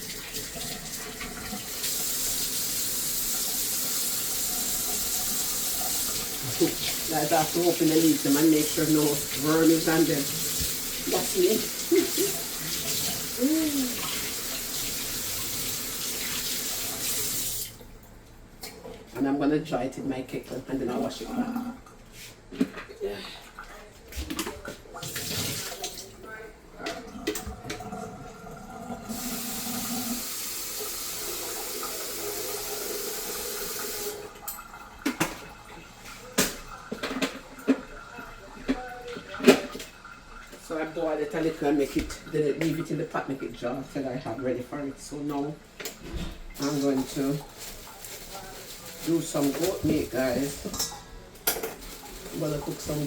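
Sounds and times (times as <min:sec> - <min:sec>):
kitchen tap running: 0:00.0 - 0:18.1, 0:24.2 - 0:53.0
tap running into sink: 0:10.2 - 0:13.2.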